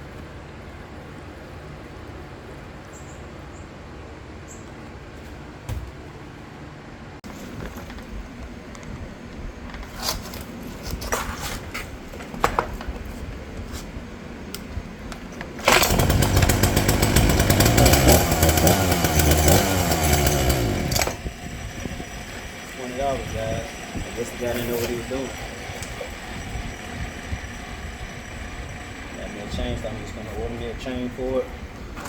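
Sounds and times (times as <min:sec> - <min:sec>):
chainsaw engine running: 0:15.6 - 0:31.5.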